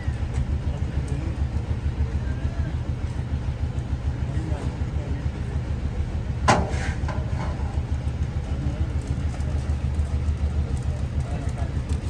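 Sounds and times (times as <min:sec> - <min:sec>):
low pulsing mechanical rumble: 0:00.0 - 0:12.0
sharp metallic clank: 0:06.5 - 0:07.9.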